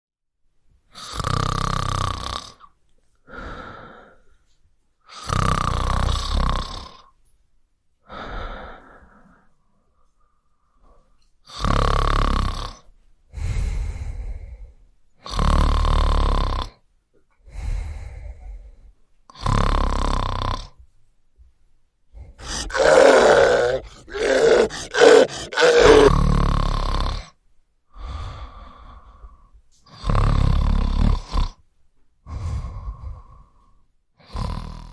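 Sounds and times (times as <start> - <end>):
soft breath: 22.4 - 26.1
loud rasping snores: 22.4 - 26.2.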